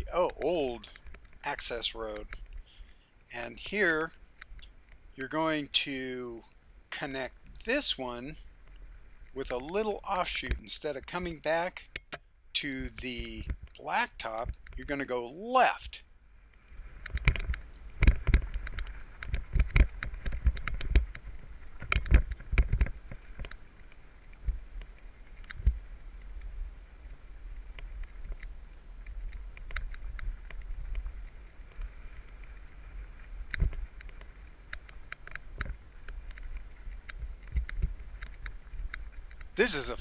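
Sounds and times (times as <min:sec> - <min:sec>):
bike rattling on dirt trail: 0:16.5 - 0:40.0.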